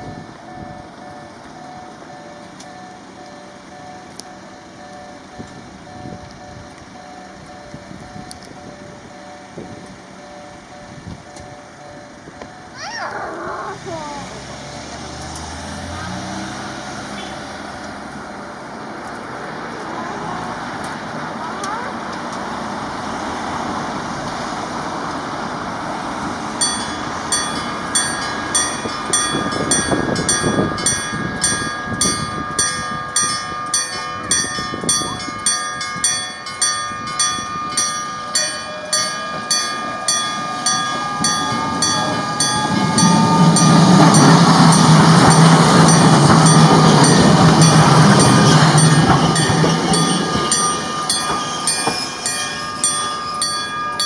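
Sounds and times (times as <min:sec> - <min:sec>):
level crossing warning bell: 0:00.0 - 0:54.0
tram rumbling past: 0:00.0 - 0:54.0
rising whine: 0:37.6 - 0:54.0.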